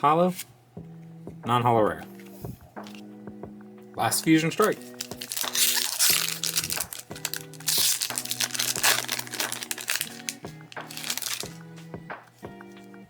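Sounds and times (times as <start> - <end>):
background music: 0.0 - 13.0
foil wrapper crinkling and tearing: 4.6 - 11.6.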